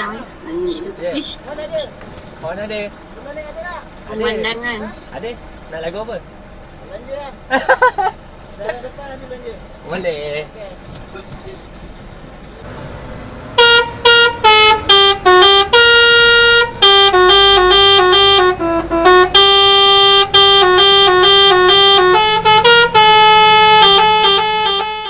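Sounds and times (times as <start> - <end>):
truck musical horn playing tune: 13.6 - 25.0.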